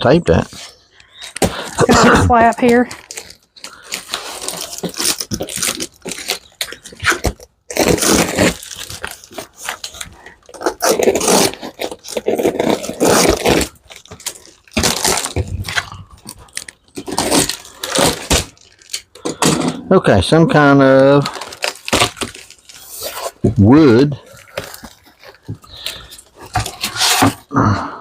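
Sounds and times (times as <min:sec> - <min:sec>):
cardboard box being torn open: 0:01.4 - 0:19.0, 0:21.2 - 0:23.6.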